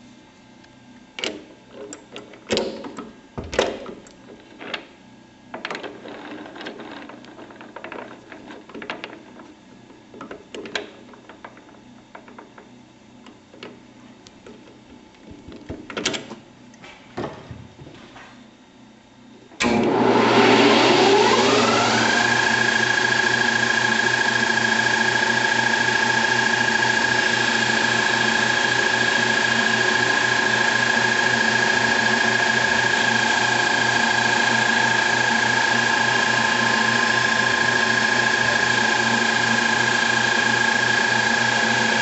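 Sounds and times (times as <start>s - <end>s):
clicks and knocks: 5.5s - 12.7s
lathe starting with rising whine: 19.6s - 42.0s.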